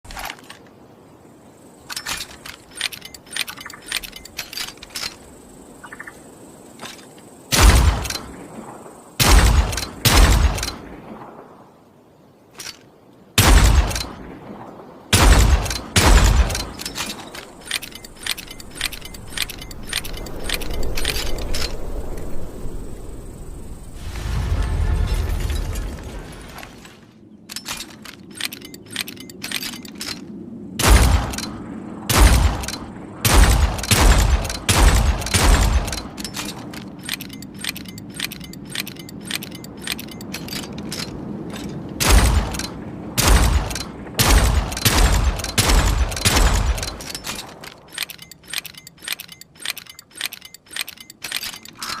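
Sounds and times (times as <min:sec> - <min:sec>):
revolver gunshots: 0:09.2 - 0:10.9, 0:13.4 - 0:14.3, 0:15.1 - 0:17.2, 0:32.1 - 0:36.1
revolver action clicks: 0:15.5 - 0:22.3, 0:27.5 - 0:30.4, 0:33.8 - 0:42.8, 0:44.7 - 0:52.0.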